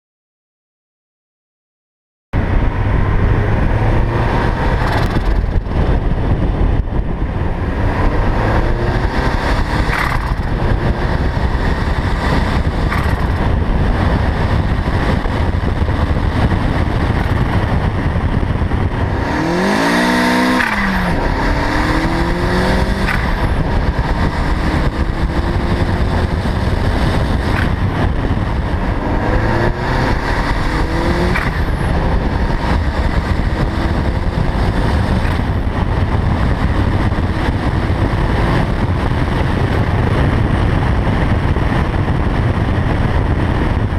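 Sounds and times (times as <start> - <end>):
car engine revving: 2.4 - 43.9
turbo flutter: 9.0 - 18.0.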